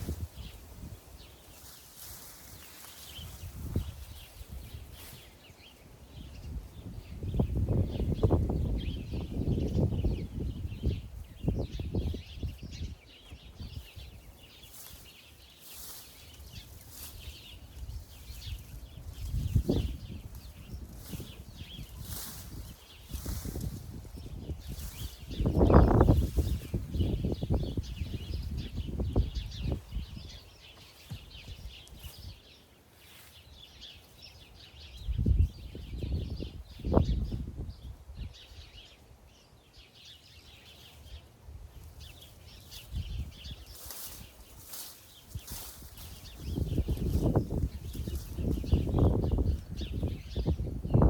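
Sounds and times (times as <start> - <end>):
rustling: 0.0 - 5.4, 14.6 - 23.9, 41.8 - 48.9
small birds chirping: 0.0 - 51.0.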